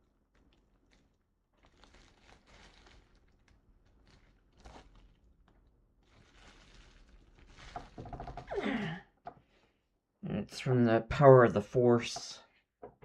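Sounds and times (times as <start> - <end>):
packaging rustling and crinkling: 0.2 - 8.3.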